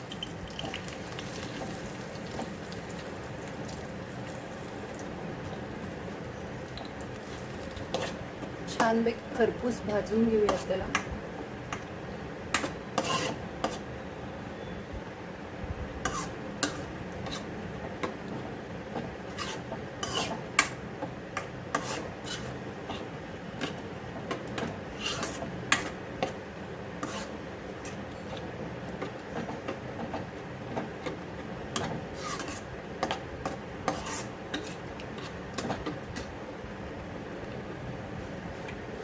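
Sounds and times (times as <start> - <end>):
low background hum: 0.0 - 39.0
spatula scraping in a pan: 7.2 - 9.0, 10.4 - 10.8, 12.5 - 13.9, 16.0 - 17.5, 19.3 - 20.8, 21.4 - 23.8, 24.6 - 26.4, 27.0 - 28.1, 31.8 - 36.3.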